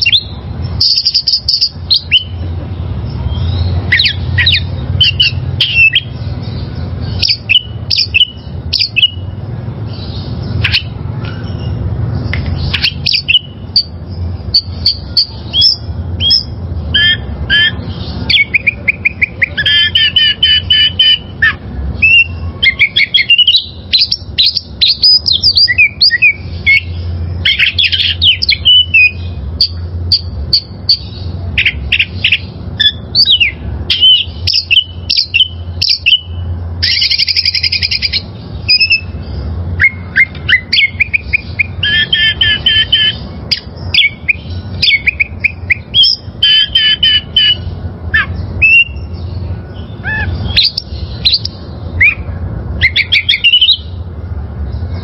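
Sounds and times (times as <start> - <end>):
songbird singing: 0.0 - 55.0.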